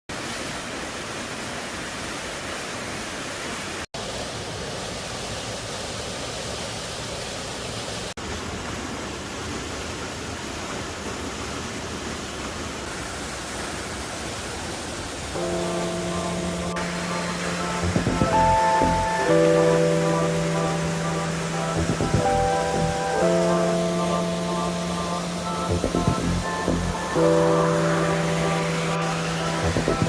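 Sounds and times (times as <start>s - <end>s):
stream water rushing: 0.1s - 30.0s.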